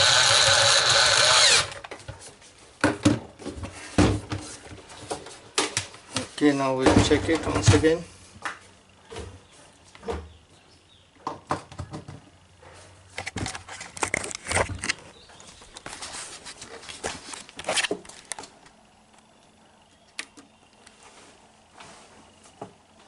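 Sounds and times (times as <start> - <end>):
clattering and scraping: 13.1 - 15.2.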